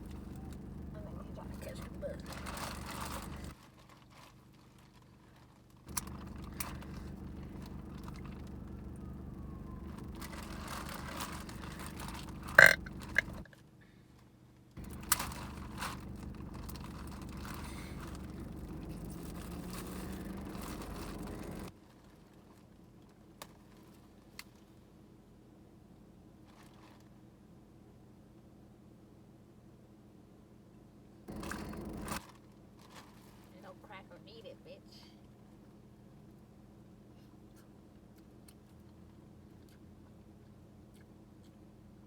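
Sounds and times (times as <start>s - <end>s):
steady low hum: 0.0s - 3.6s, 5.9s - 13.5s, 14.8s - 21.7s, 31.3s - 32.2s
eating clicks and crunches: 5.9s - 9.1s, 9.7s - 13.4s, 14.8s - 21.7s
person burping: 12.5s - 13.4s.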